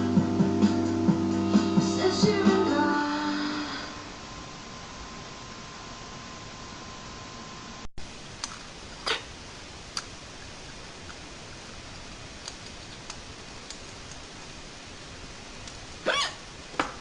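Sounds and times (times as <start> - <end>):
steady hiss: 0.0 - 17.0
woman hiccuping: 16.0 - 16.4.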